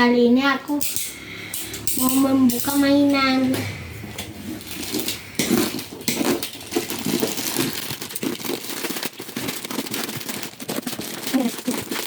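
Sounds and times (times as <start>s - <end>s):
packaging crinkling and tearing: 4.5s - 12.0s.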